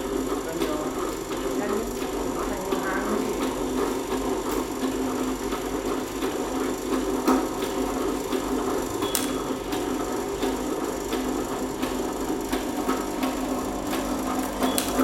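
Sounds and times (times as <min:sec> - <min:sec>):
machine motor hum: 0:00.0 - 0:15.0
machine clicks: 0:08.9 - 0:15.0.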